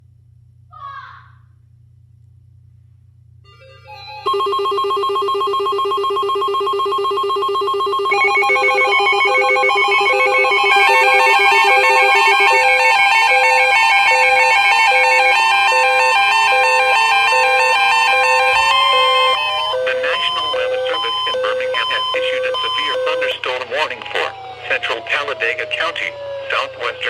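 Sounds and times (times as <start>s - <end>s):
steady alert tone: 3.5s - 23.5s
regular beeping: 3.5s - 27.0s
trilling alarm: 3.5s - 27.0s
rising tone: 3.6s - 23.2s.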